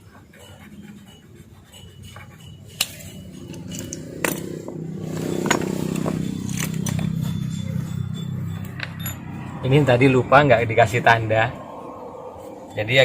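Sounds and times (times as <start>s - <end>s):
low drone: 2.8s - 13.0s.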